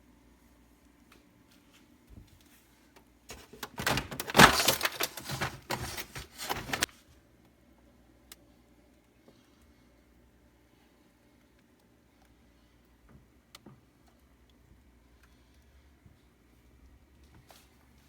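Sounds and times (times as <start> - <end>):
parts rattling and clattering: 3.3 - 6.9.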